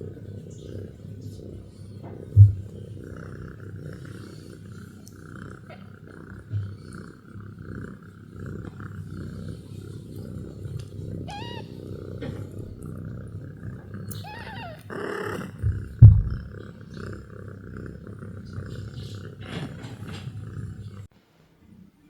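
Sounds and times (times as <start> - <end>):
cat purring: 0.0 - 21.1
loud low thump: 2.4 - 2.6, 15.6 - 16.5
kitten mewing: 11.2 - 11.8, 14.0 - 16.5.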